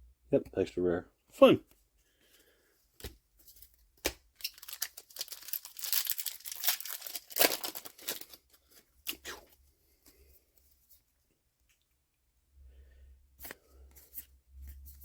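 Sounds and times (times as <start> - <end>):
foil wrapper tearing and crinkling: 4.4 - 9.4.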